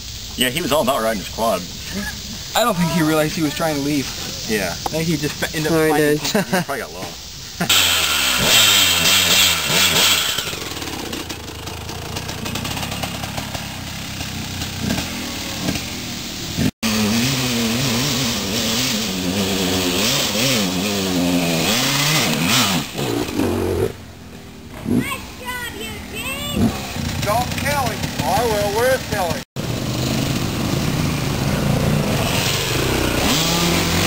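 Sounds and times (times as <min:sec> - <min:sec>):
motorcycle engine revving: 0:07.6 - 0:25.4, 0:26.3 - 0:34.0.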